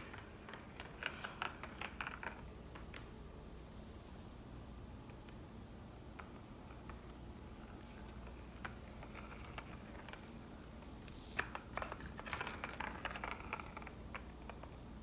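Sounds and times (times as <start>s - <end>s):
plastic toy ball track clicking: 11.4s - 14.7s.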